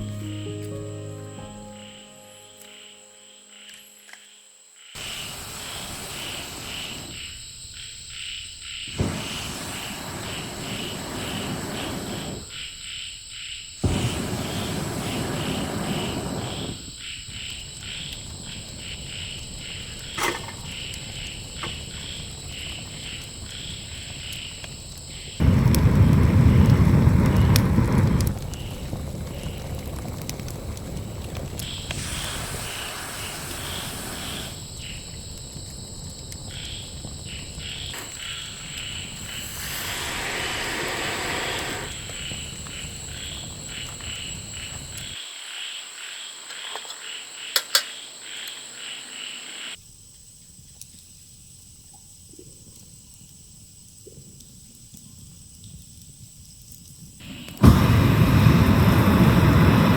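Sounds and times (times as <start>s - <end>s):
high-pitched insect whine: 0.0s - 25.5s, 31.6s - 52.3s
insects chirping rhythmically: 0.0s - 26.3s, 28.4s - 29.8s, 30.5s - 58.0s
rushing noise: 38.0s - 43.7s, 57.2s - 59.9s.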